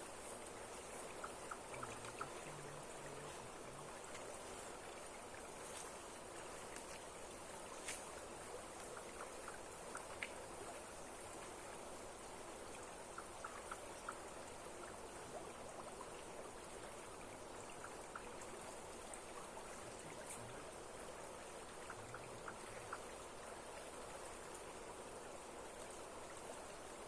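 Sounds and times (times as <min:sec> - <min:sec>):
flowing water rushing: 0:00.0 - 0:27.0
small ticks: 0:00.2 - 0:02.5, 0:06.7 - 0:07.1, 0:07.8 - 0:11.6, 0:12.7 - 0:14.6, 0:17.6 - 0:18.7.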